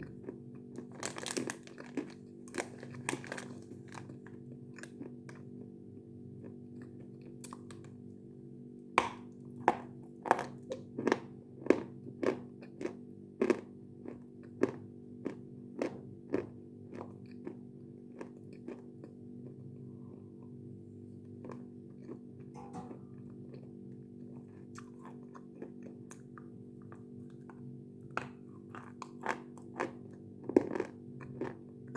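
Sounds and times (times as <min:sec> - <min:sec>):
steady low hum: 0:19.4 - 0:29.0
chalk crunching while chewing: 0:24.4 - 0:31.9.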